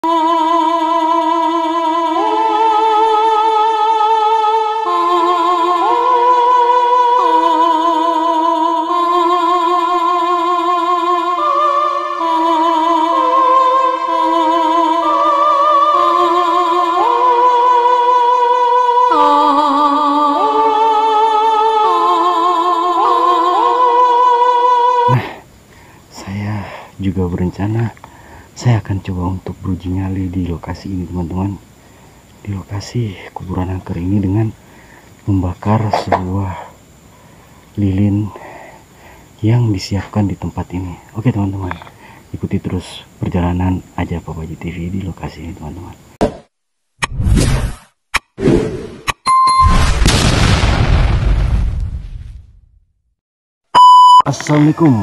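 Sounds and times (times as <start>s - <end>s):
slow sustained chords: 9.9s - 25.1s.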